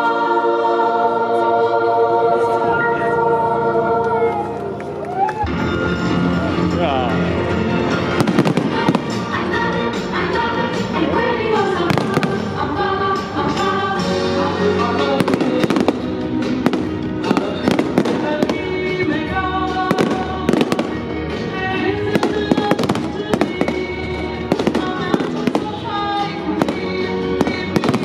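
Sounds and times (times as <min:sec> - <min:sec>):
loud music: 0:00.0 - 0:28.0
fireworks bursting: 0:07.9 - 0:28.0.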